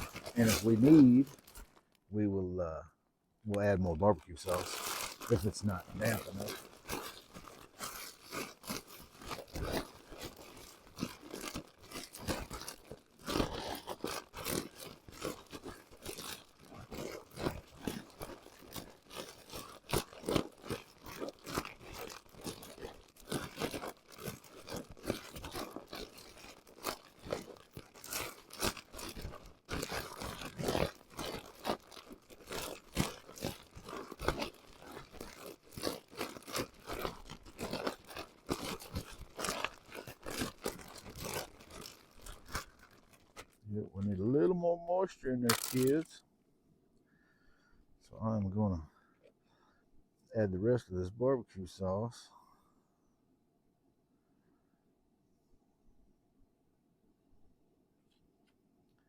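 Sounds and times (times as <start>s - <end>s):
plastic bag crinkling and crunching: 0.0s - 2.0s, 3.5s - 46.2s.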